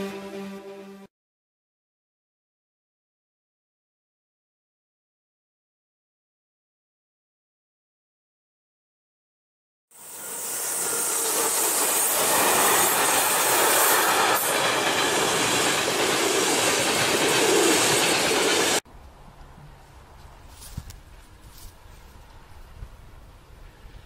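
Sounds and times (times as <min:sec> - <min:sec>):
train running on rails: 0:10.0 - 0:18.8.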